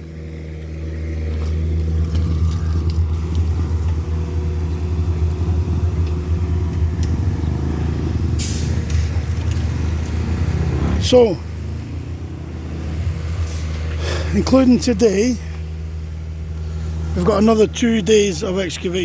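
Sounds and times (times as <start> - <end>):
excavator diesel engine running: 0.0 - 19.0
short hiss: 8.4 - 9.0.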